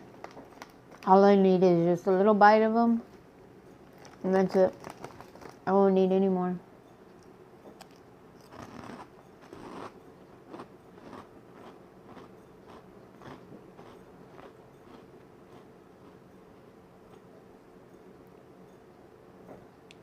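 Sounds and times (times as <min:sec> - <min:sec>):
person chewing crunchy food: 0:07.8 - 0:16.3.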